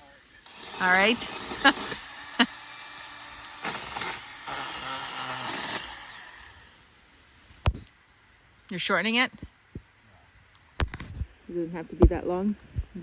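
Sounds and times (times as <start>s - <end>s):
pole saw cutting branches: 0.4s - 7.9s.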